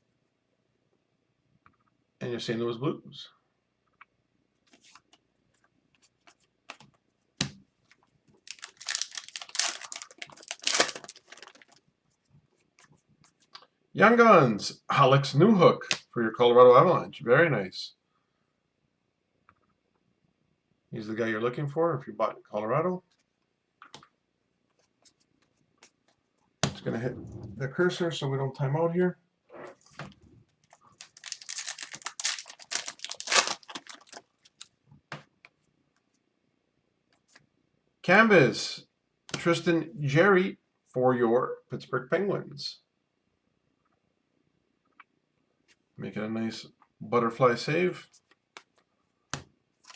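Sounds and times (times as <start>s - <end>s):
cards rustling and scraping: 8.4s - 11.8s, 30.7s - 34.7s
wrapper tearing and crinkling: 8.4s - 11.8s, 30.9s - 34.7s.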